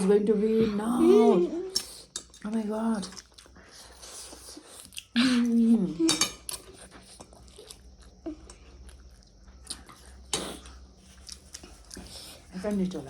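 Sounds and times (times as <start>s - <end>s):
utensils clinking against bowls: 6.0s - 6.6s.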